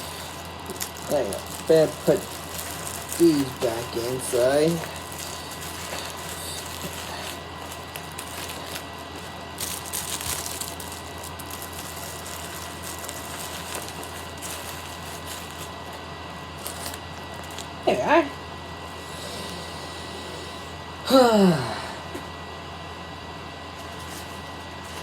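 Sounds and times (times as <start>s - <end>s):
rustling and crinkling of bag: 0.0s - 17.8s, 23.6s - 25.0s
low electrical hum: 0.0s - 25.0s.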